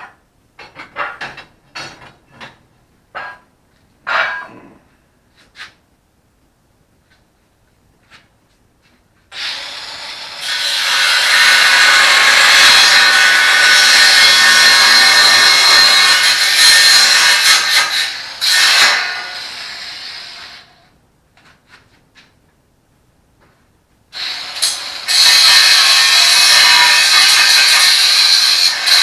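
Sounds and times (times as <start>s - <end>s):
angle grinder cutting: 9.3s - 20.7s, 24.2s - 29.0s.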